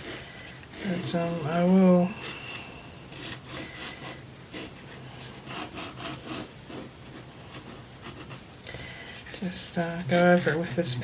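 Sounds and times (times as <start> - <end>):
pencil strokes on paper: 0.0 - 8.4, 9.0 - 11.0.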